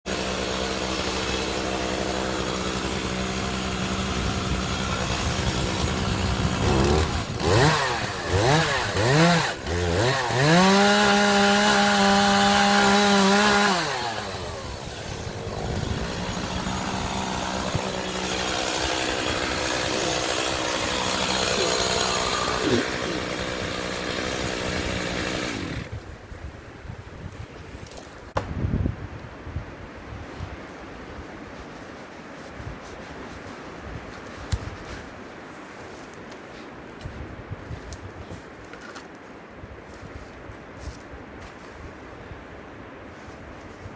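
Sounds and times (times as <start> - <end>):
chainsaw engine revving: 0.1 - 26.0.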